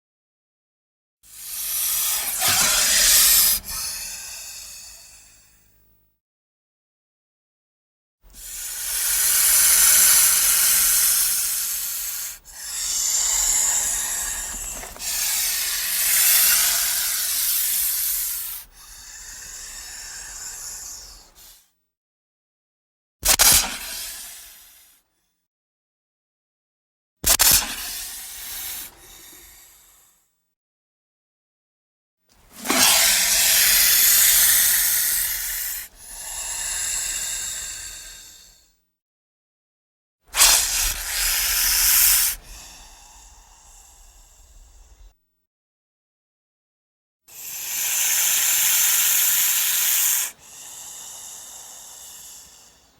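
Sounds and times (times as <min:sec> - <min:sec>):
snake hissing: 0:01.4 - 0:05.5, 0:08.4 - 0:21.5, 0:28.0 - 0:30.0, 0:32.6 - 0:38.6, 0:40.4 - 0:45.0, 0:47.4 - 0:52.9.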